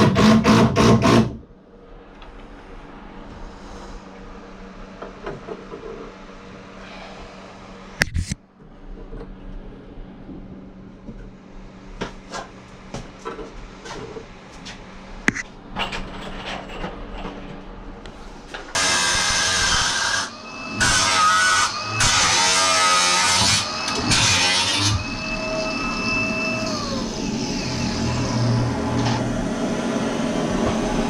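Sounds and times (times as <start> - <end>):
power tool running: 18.8 - 31.0.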